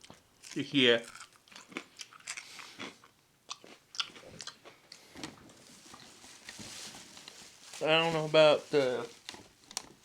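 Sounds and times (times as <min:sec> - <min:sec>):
person chewing crunchy food: 0:00.0 - 0:05.2.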